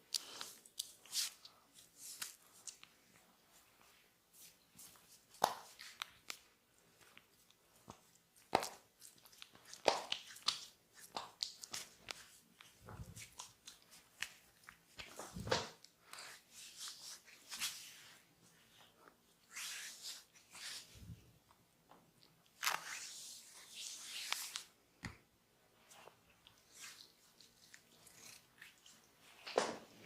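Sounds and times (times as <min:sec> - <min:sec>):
hands rubbing hair and skin: 0:03.5 - 0:18.8.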